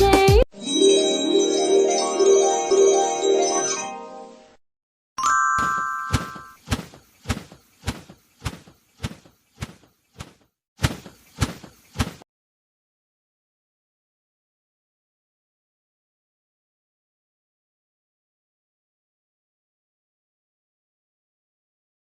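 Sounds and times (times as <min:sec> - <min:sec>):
music cue: 0:00.2 - 0:04.6
brief chime: 0:05.2 - 0:06.6
sharp knocks: 0:05.6 - 0:12.2.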